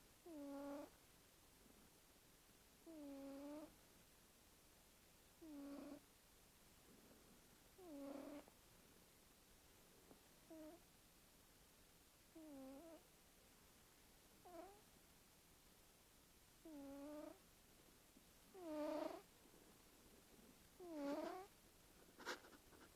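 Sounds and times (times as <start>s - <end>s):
cat snoring with squeaks: 0.3s - 0.9s, 2.8s - 3.7s, 5.4s - 6.0s, 7.8s - 8.5s, 10.5s - 10.8s, 12.4s - 13.0s, 14.4s - 14.8s, 16.6s - 17.4s, 18.5s - 19.3s, 20.8s - 21.5s.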